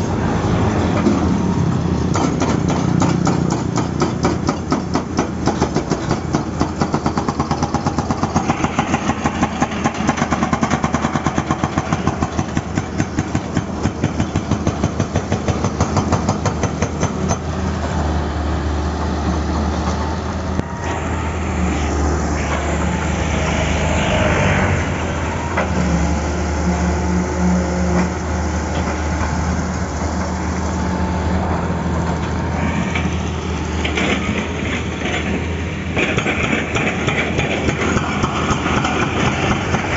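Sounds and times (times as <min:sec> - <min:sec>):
diesel engine running: 0:00.0 - 0:39.9
hydraulic breaker hammering asphalt: 0:02.1 - 0:17.5, 0:33.8 - 0:39.9.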